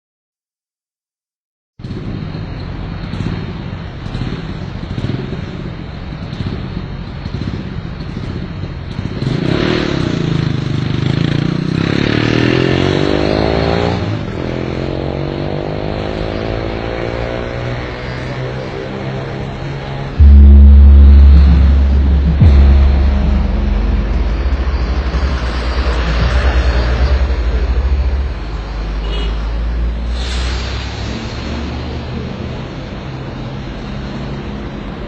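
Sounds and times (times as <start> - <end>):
road traffic noise: 1.8 - 35.0
vehicle engine passing by: 9.2 - 34.9.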